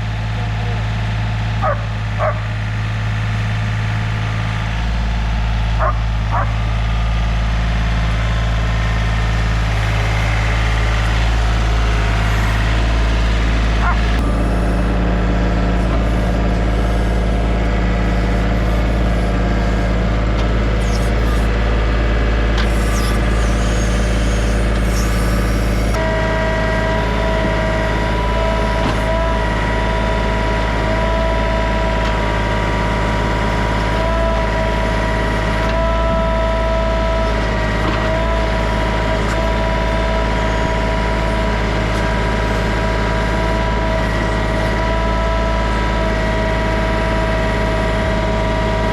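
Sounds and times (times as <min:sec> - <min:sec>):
tractor diesel engine running: 0:00.0 - 0:48.9
dog barking: 0:01.6 - 0:02.5, 0:05.8 - 0:06.6, 0:13.8 - 0:14.1.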